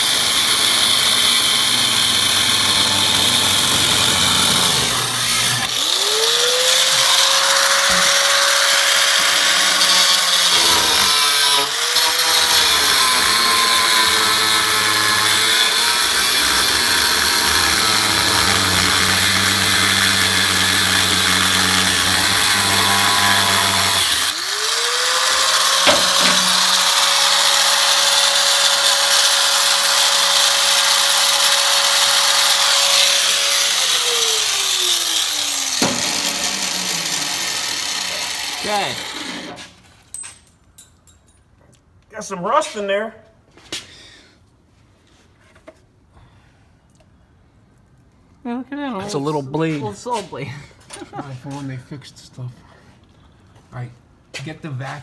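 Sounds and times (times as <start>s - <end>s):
power tool whining on sheet metal: 0.0s - 39.8s.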